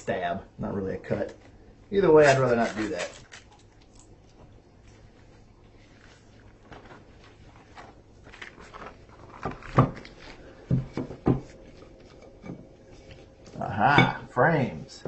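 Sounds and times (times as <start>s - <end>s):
packaging rustling: 6.1s - 12.1s.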